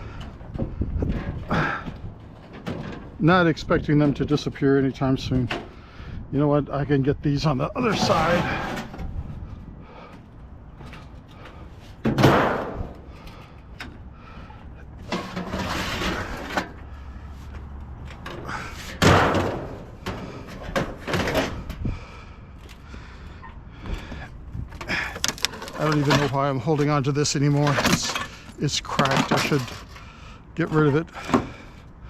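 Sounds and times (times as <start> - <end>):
loud slams: 12.1 - 12.9, 19.0 - 19.9
shuffling and handling noise: 24.6 - 31.0.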